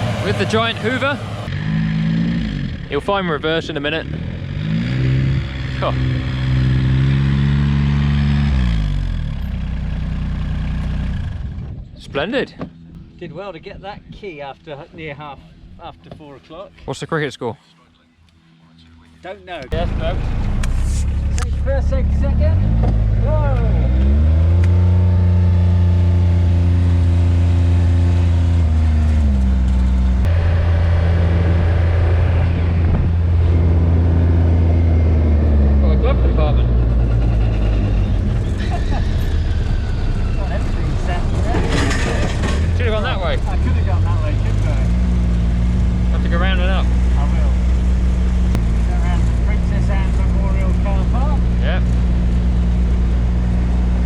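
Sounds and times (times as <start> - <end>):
vehicle engine running: 0.0 - 11.8, 19.7 - 54.0
vehicle engine from inside cab: 19.7 - 38.6.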